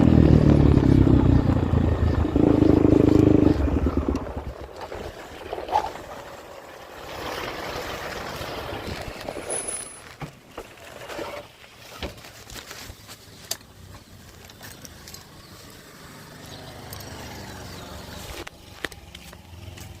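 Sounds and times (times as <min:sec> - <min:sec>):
motorcycle engine running: 0:00.0 - 0:06.2.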